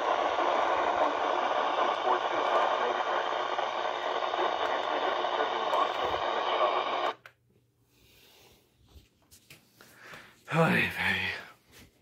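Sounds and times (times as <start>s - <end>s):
radio static hiss: 0.0s - 7.3s
faint hum: 0.0s - 8.7s.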